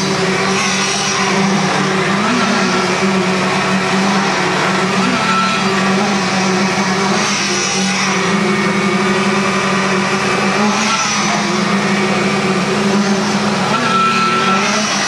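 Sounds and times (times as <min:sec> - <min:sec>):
motor humming: 0:00.0 - 0:15.0.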